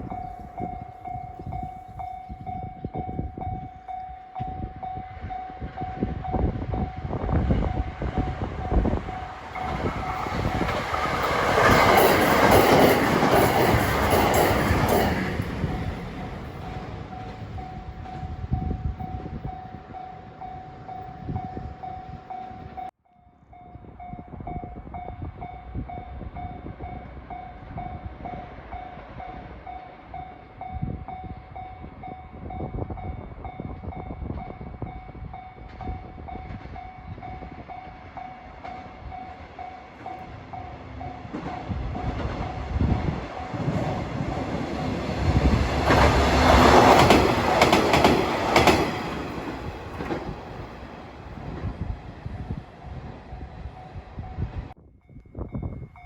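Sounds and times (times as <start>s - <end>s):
diesel railcar rumble: 0.0s - 22.9s, 23.5s - 54.8s
level-crossing warning bell: 0.0s - 52.6s.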